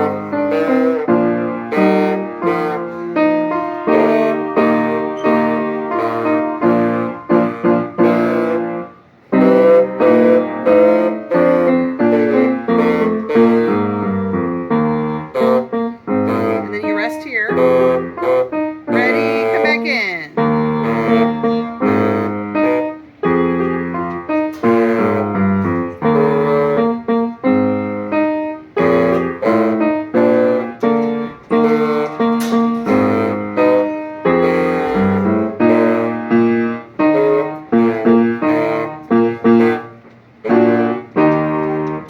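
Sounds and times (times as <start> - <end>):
piano playing melodic piece: 0.0 - 42.0.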